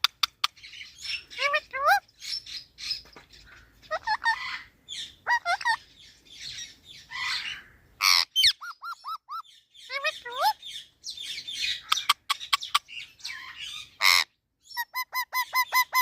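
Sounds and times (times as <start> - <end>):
parrot squawking and chirping: 0.0 - 16.0.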